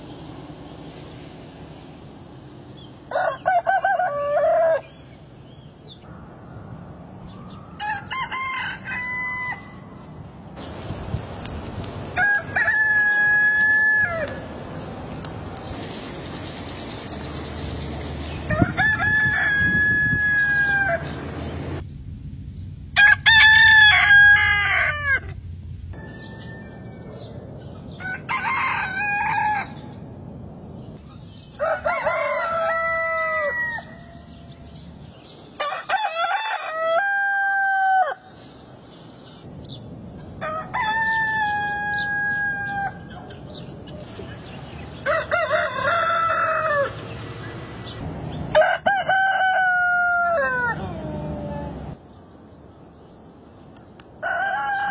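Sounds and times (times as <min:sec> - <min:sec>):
roosters crowing: 0:03.0 - 0:05.1, 0:07.6 - 0:10.0, 0:12.0 - 0:14.9, 0:18.3 - 0:21.5, 0:23.0 - 0:30.0, 0:31.5 - 0:34.8, 0:35.6 - 0:38.4, 0:40.4 - 0:43.4, 0:44.6 - 0:52.0, 0:54.2 - 0:54.9.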